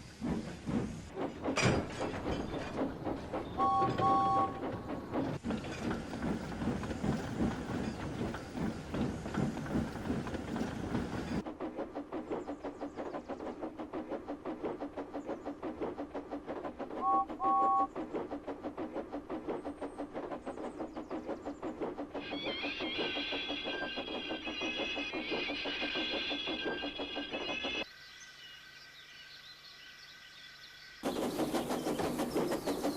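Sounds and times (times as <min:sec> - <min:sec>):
freight train rattling on rails: 0:00.0 - 0:27.9, 0:31.0 - 0:32.9
train whistle peeps: 0:03.6 - 0:04.6, 0:17.0 - 0:17.9, 0:22.2 - 0:27.7.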